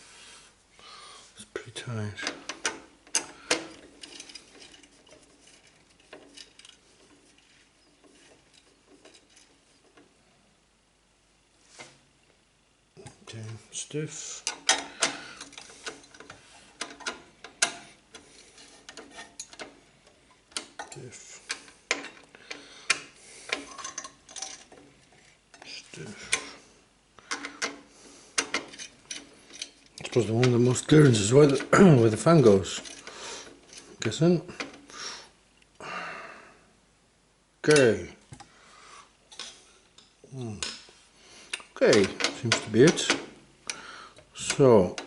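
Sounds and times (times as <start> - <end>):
metal parts scraping: 2.2 - 10.0, 14.4 - 19.8, 20.5 - 26.7, 27.3 - 34.9
metal parts clicking: 2.2 - 10.1, 14.4 - 26.6, 27.2 - 34.9, 41.6 - 43.8.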